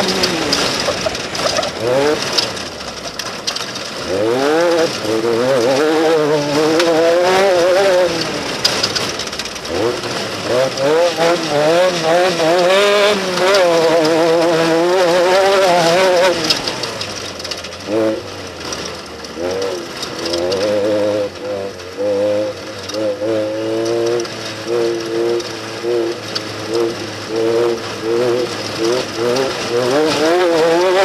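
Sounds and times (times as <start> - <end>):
engines revving: 0.0 - 31.0.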